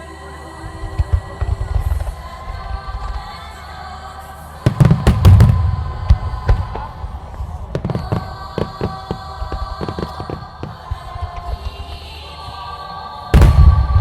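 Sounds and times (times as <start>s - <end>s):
background music: 0.0s - 14.0s
firework booming bangs: 4.7s - 11.9s, 13.3s - 14.0s
firework pops and cracks: 4.7s - 12.2s, 13.4s - 14.0s.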